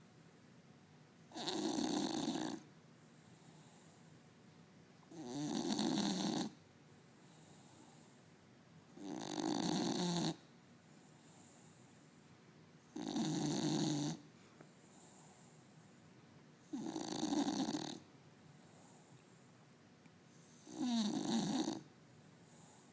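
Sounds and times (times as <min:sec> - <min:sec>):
dog snoring loudly: 0:01.3 - 0:02.6, 0:05.1 - 0:06.6, 0:09.0 - 0:10.4, 0:12.9 - 0:14.2, 0:16.7 - 0:18.0, 0:20.5 - 0:21.9.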